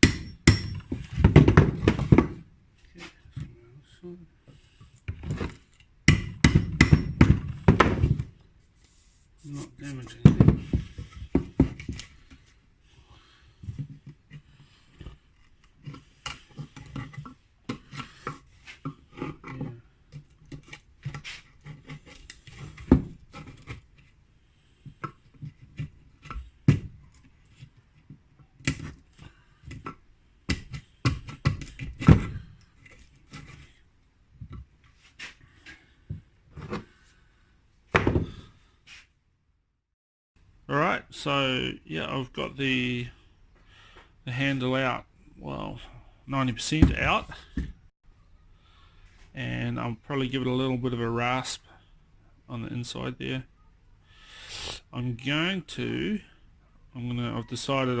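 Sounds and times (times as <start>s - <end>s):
chisel scraping wood: 13.9s - 24.2s.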